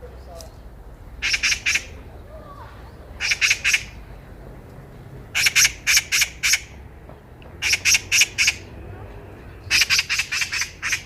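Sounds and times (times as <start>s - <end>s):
magpie chattering calls: 1.2s - 2.0s, 3.2s - 4.0s, 5.3s - 6.8s, 7.6s - 8.7s, 9.6s - 11.0s.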